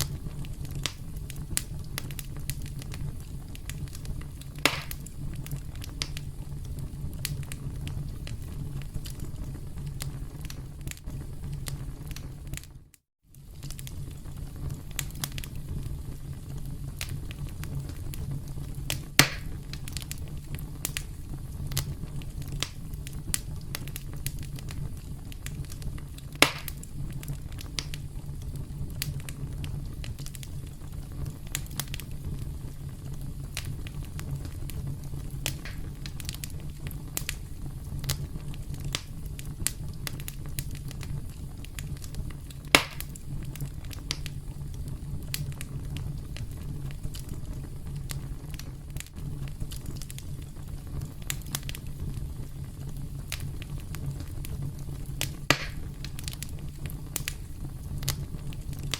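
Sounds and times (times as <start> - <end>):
campfire crackling: 0.0 - 58.9
fire popping loudly: 0.0 - 58.9.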